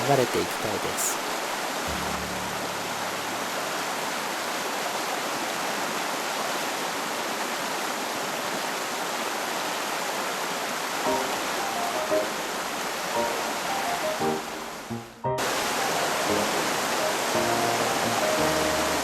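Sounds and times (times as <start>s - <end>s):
stream rushing over rocks: 0.0s - 19.0s
faint music notes: 1.9s - 4.0s, 11.1s - 19.0s.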